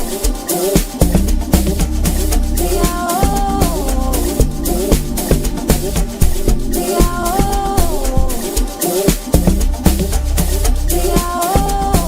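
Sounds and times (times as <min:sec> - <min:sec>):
drum and shaker hits: 0:00.0 - 0:12.0
deep sustained bass: 0:01.0 - 0:08.4, 0:09.4 - 0:12.0.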